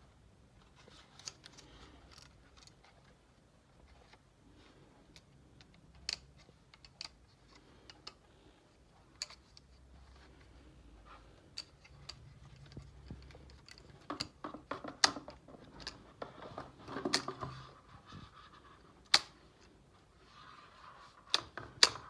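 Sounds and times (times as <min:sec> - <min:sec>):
faint plastic clicks and taps: 0:05.0 - 0:08.3.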